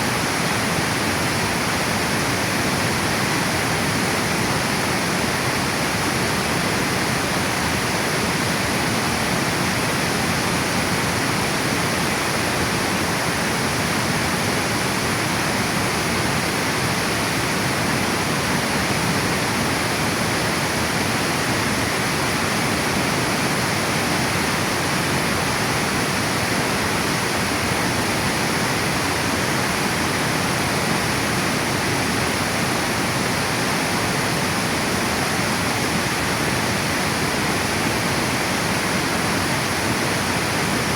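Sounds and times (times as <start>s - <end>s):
water rushing over weir: 0.0s - 40.9s.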